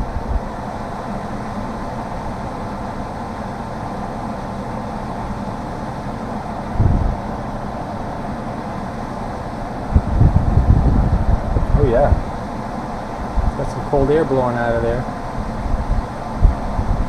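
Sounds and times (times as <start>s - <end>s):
air conditioner fan running: 0.0s - 17.0s
short low bump: 6.7s - 7.4s.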